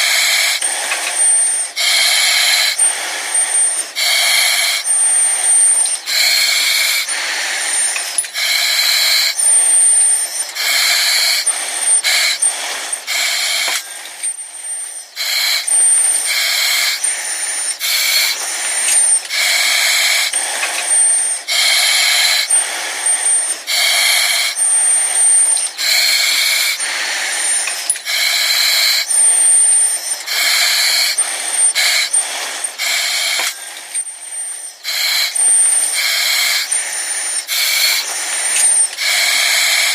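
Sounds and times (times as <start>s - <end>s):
breathing through oxygen mask: 0.0s - 39.9s.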